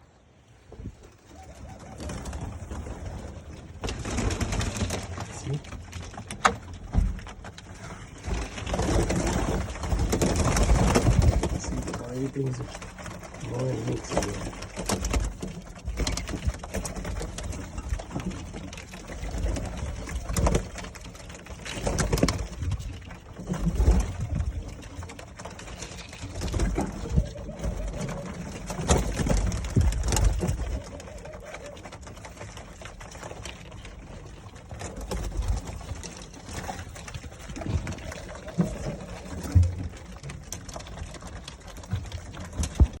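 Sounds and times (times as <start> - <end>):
doves cooing: 0.9 - 6.2, 7.3 - 43.0.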